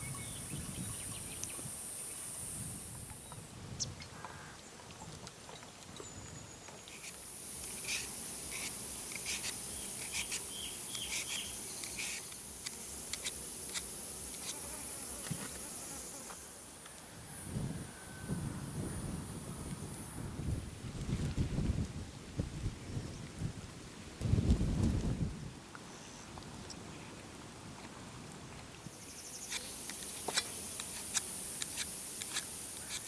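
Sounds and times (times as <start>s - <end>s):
insects chirring: 0.0s - 4.6s, 5.6s - 18.2s, 28.8s - 33.0s.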